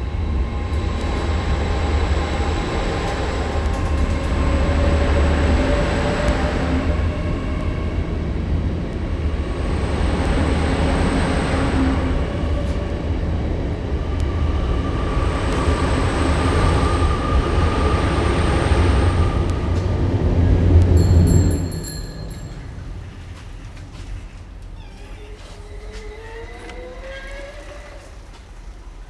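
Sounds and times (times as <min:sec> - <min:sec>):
train rumbling over bridge: 0:00.0 - 0:29.0.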